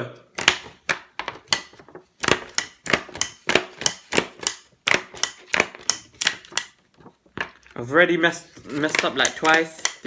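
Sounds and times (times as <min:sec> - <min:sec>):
stapler clicking through card: 0:01.5 - 0:06.8, 0:08.8 - 0:10.0.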